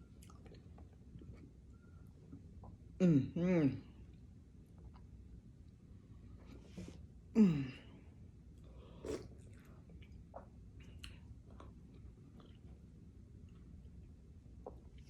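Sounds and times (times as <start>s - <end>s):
chewing and mouth smacks: 0.0s - 2.8s, 8.6s - 15.0s.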